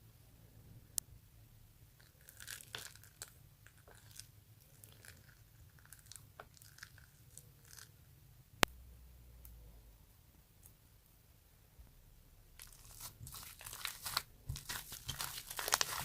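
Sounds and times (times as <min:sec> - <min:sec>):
dough crackling when handled: 0:12.6 - 0:16.0.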